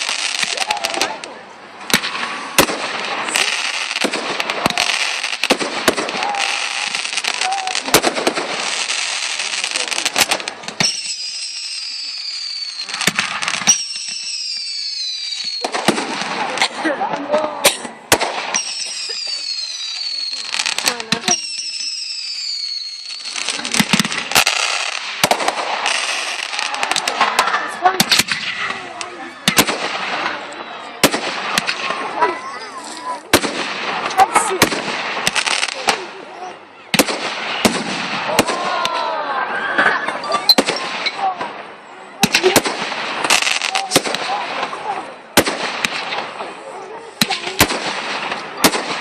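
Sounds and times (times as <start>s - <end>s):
crackling hiss: 0.0s - 39.4s, 40.5s - 49.0s
fireworks bangs and pops: 0.0s - 49.0s
firework whistle falling: 10.8s - 13.0s, 13.6s - 15.7s.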